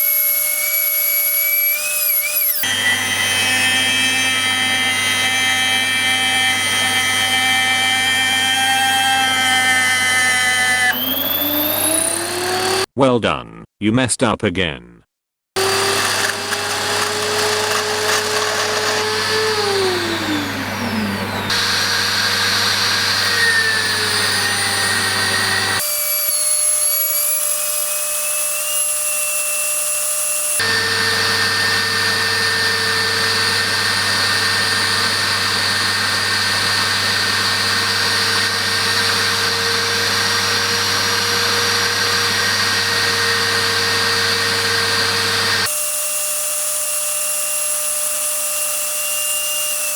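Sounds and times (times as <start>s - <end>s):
electric grinder motor whine: 0.0s - 12.9s, 15.6s - 49.9s.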